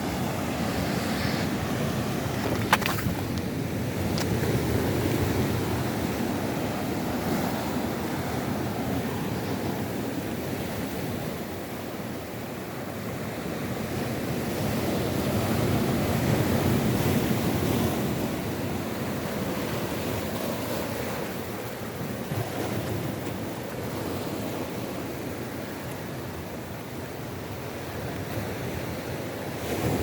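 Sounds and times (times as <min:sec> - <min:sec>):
wind on microphone: 0:00.0 - 0:11.5
surf breaking ashore: 0:00.0 - 0:30.0.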